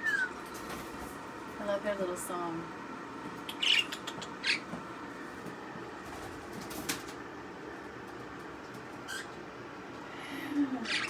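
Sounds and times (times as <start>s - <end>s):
steady room hum: 0.0s - 11.0s
small birds chirping: 3.4s - 4.8s, 9.0s - 9.4s, 10.6s - 11.0s.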